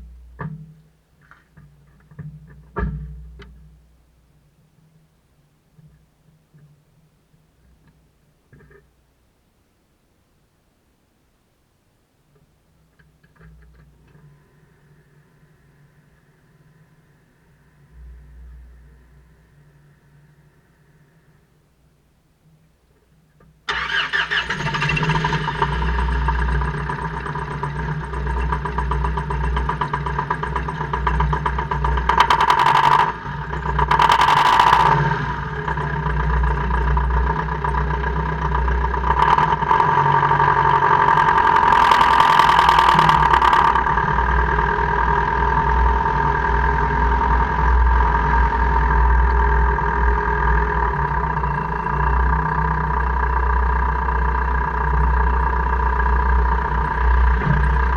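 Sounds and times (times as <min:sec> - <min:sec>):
car engine running: 0:23.7 - 0:57.9.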